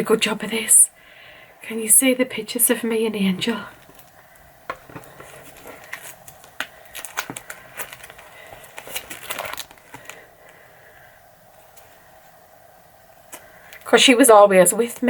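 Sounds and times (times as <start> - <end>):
photo album pages rustling: 3.3 - 12.4.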